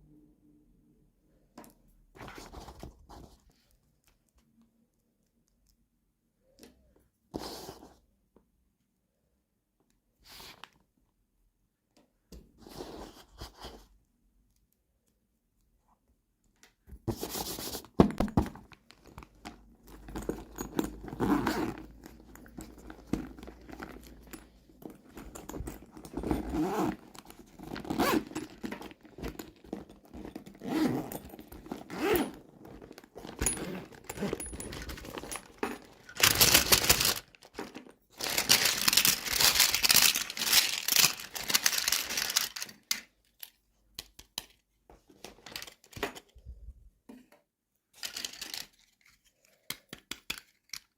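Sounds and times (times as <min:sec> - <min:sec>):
packaging crinkling and tearing: 0:32.8 - 0:42.9.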